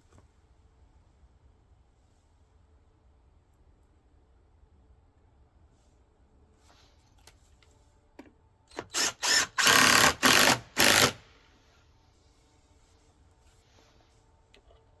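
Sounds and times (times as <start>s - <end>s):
power drill driving screws: 8.7s - 11.3s.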